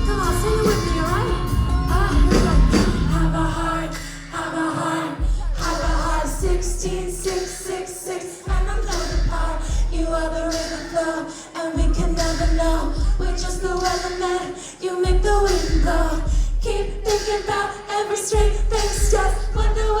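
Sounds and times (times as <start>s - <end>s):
deep bass: 0.0s - 4.4s, 5.2s - 7.7s, 8.5s - 11.0s, 11.8s - 14.4s, 15.1s - 17.5s, 18.4s - 20.0s
woman singing: 0.0s - 20.0s.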